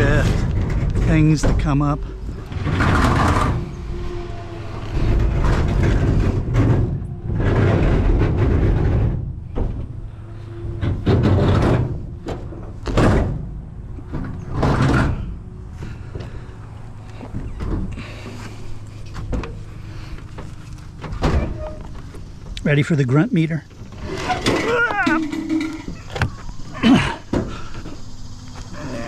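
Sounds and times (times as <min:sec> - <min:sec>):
scrap metal scraping and rattling: 0:00.0 - 0:16.5, 0:17.4 - 0:22.8, 0:23.4 - 0:28.0.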